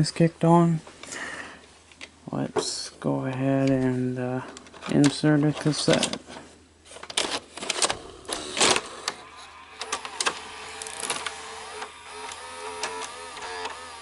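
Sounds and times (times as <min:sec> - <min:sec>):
loading motor whirring: 0:07.1 - 0:14.0
cassette clicks and knocks: 0:09.8 - 0:13.8.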